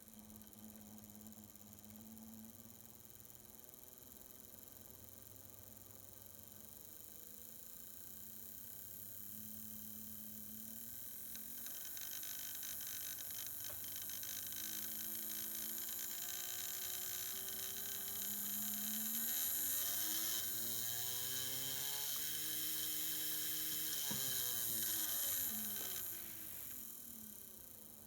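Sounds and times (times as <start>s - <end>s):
small electric motor whining: 10.7s - 27.7s.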